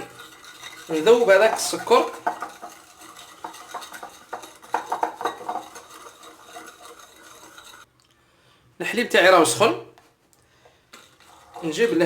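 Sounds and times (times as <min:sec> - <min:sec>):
utensil stirring in a bowl: 0:00.0 - 0:07.9, 0:10.8 - 0:12.0.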